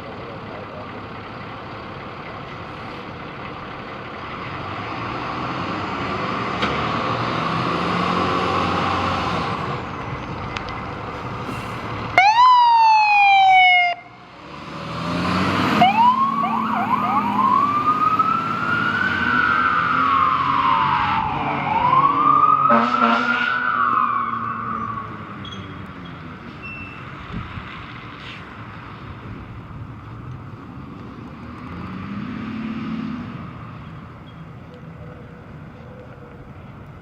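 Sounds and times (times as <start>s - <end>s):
fire engine motor: 0.0s - 32.6s
siren chirps: 12.2s - 14.2s, 15.8s - 26.2s
siren wailing: 12.2s - 14.2s, 15.7s - 25.4s
fire engine horn blast: 22.5s - 23.8s.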